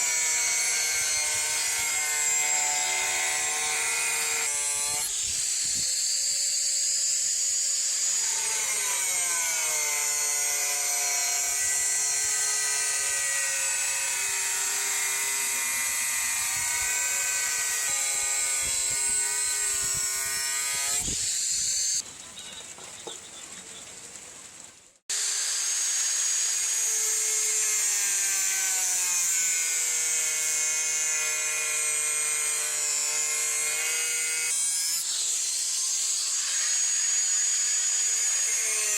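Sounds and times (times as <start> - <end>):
power grinder motor whine: 0.0 - 22.0, 25.1 - 38.9
grinding hiss on metal: 27.6 - 38.9.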